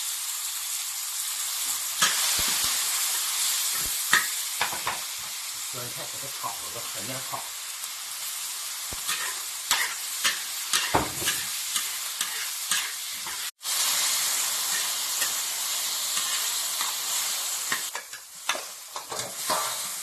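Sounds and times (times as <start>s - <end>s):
cabbage sizzling in a hot pan: 0.0s - 20.0s
spatula scraping a pan: 9.1s - 13.5s, 16.2s - 17.0s, 17.7s - 20.0s.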